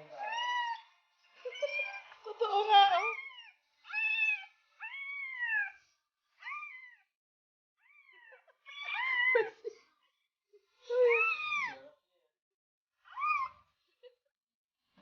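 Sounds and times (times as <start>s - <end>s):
cat meowing: 0.1s - 0.9s, 3.0s - 5.8s, 6.4s - 7.1s.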